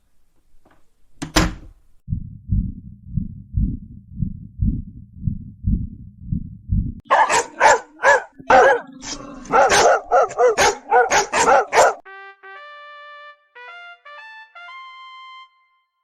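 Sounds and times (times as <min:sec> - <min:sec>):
heartbeat thumps: 0:02.0 - 0:07.0
dog barking: 0:07.0 - 0:12.0.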